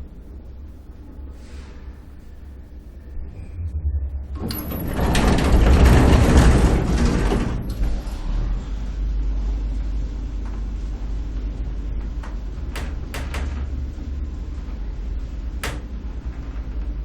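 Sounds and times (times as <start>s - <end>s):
elevator humming: 1.9s - 17.0s
elevator rushing rattle: 3.1s - 17.0s.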